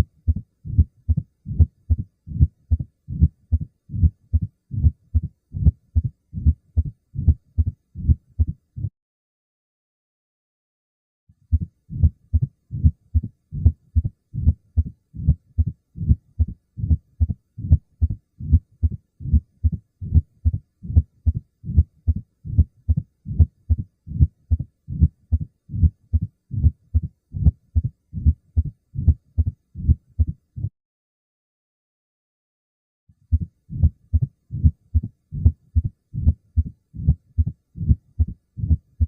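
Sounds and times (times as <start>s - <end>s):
heartbeat thuds: 0.0s - 8.9s, 11.5s - 30.7s, 33.3s - 39.0s.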